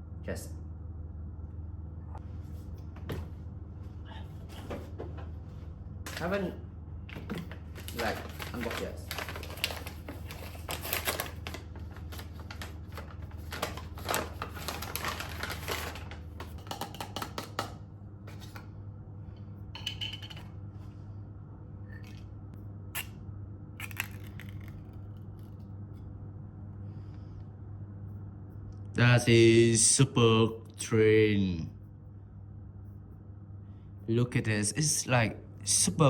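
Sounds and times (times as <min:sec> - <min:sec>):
steady low hum: 0:00.0 - 0:36.0
packaging crinkling and rustling: 0:07.1 - 0:17.0.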